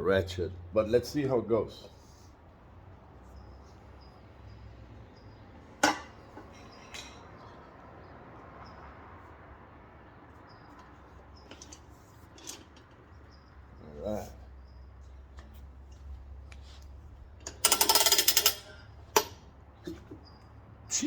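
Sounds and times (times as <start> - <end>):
metal clack of tire changer: 5.8 - 7.3, 17.4 - 20.3.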